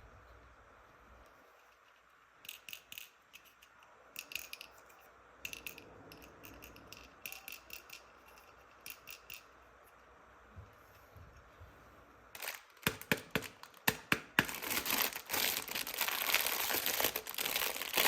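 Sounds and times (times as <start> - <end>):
plastic toy pieces clicking: 1.7 - 9.5, 12.4 - 18.0.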